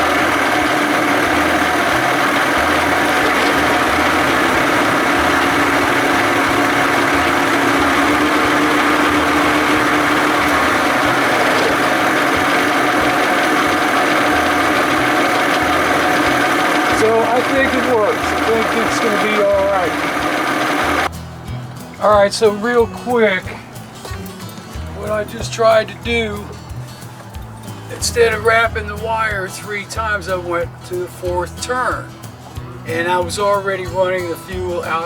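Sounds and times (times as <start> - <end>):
outboard motor idling: 0.0 - 21.1.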